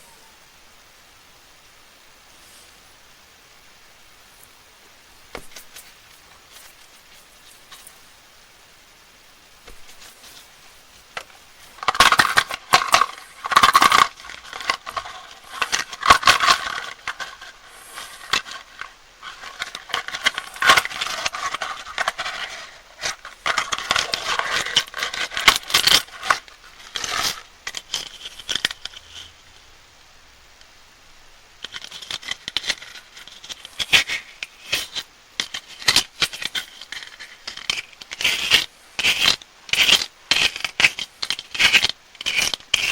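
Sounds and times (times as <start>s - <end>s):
plastic wrappers crinkling: 5.3s - 8.1s, 9.6s - 29.2s.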